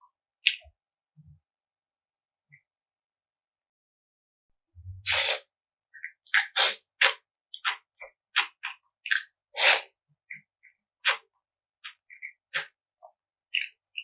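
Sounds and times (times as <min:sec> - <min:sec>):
loud noodle slurps: 0:05.0 - 0:05.4, 0:06.5 - 0:06.8, 0:09.6 - 0:09.9.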